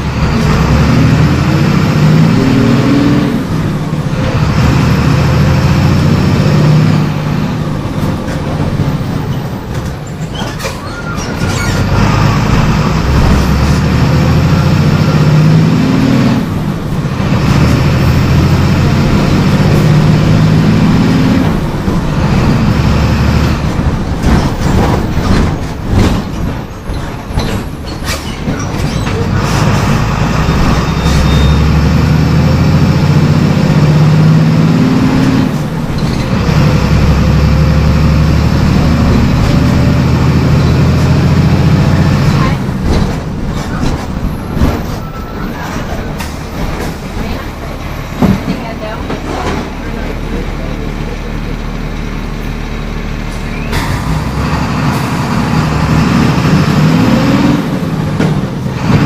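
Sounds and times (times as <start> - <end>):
bus diesel engine under load: 0.0 - 59.0.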